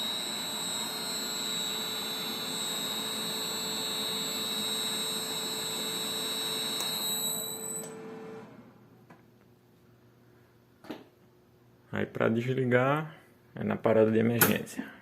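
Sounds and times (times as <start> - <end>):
high-pitched inverter whine: 0.0 - 8.6
electric motor hum: 0.0 - 8.8.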